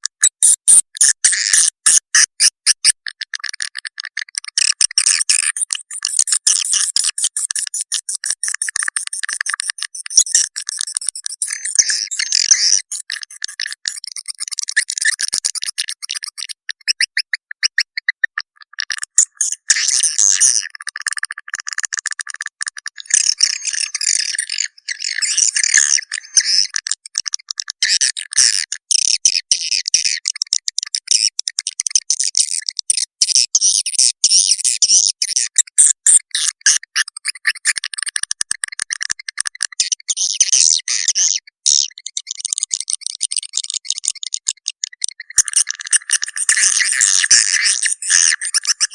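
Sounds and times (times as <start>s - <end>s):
swiftlets twittering and chirping: 5.0s - 18.4s, 23.0s - 26.8s, 45.2s - 48.9s.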